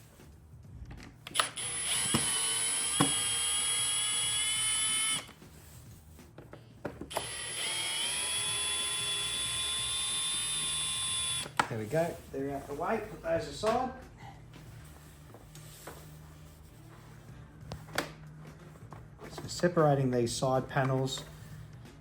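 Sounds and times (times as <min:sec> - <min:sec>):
drill click: 0:01.3 - 0:05.3, 0:07.1 - 0:11.7
cordless drill motor whining: 0:01.3 - 0:05.4, 0:07.1 - 0:11.6.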